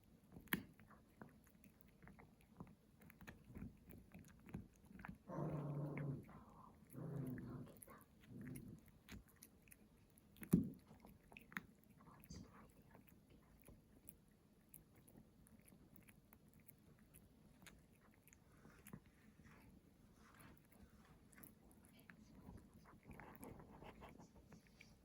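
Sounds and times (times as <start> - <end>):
dog chewing bone: 0.2 - 25.0
teeth clicking on bone: 0.3 - 19.1.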